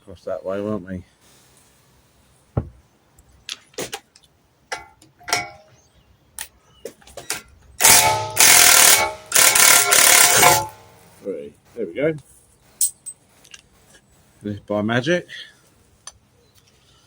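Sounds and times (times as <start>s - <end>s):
tools clinking: 4.7s - 5.7s, 7.2s - 11.0s, 12.8s - 13.6s
impact wrench hammering: 7.8s - 10.9s.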